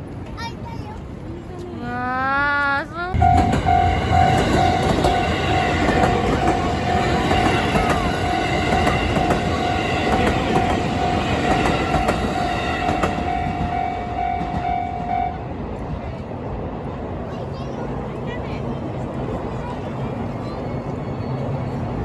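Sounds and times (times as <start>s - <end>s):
crossing warning bell ringing: 3.2s - 15.5s
train wheels clattering on rails: 3.2s - 16.2s.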